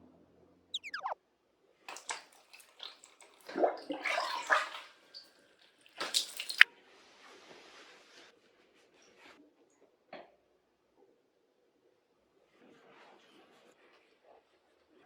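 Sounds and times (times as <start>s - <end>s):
cat squealing: 0.8s - 1.2s
bath water splashing: 1.9s - 6.6s.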